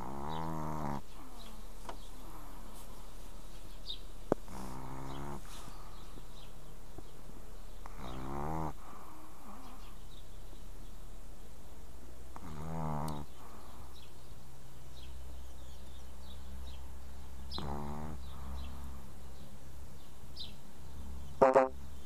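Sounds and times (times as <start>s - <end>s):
dog snoring: 0.0s - 1.4s, 4.4s - 5.7s, 7.8s - 9.7s, 12.3s - 13.7s, 17.6s - 19.0s.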